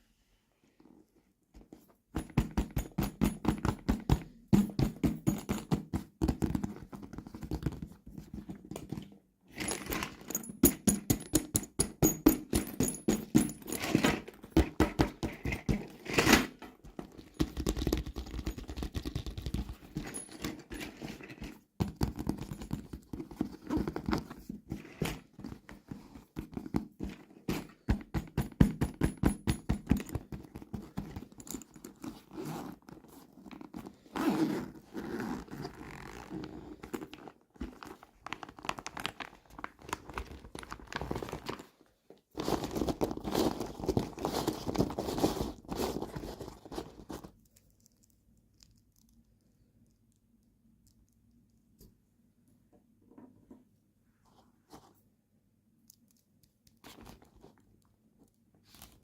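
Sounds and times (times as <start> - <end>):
plastic packaging clicks and crinkles: 37.0 - 41.8.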